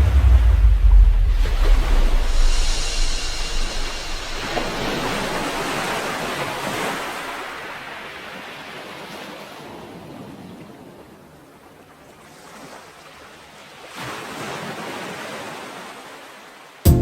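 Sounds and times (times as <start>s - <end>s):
sea waves washing onto beach: 0.0s - 16.8s.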